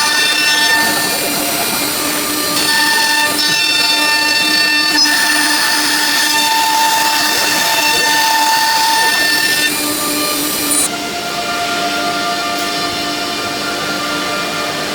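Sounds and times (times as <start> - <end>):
high whine: 0.0 - 13.8
router machine whine: 0.0 - 14.9.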